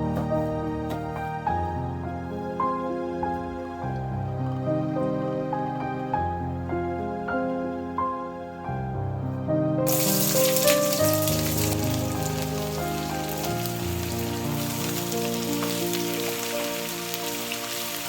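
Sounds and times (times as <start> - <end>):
soft background music: 0.0 - 18.0
food sizzling in a pan: 9.9 - 18.0.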